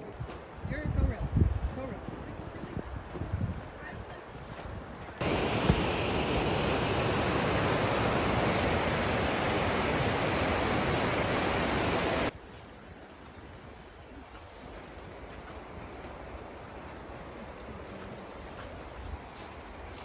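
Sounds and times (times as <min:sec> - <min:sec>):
river water rushing: 0:05.2 - 0:12.4.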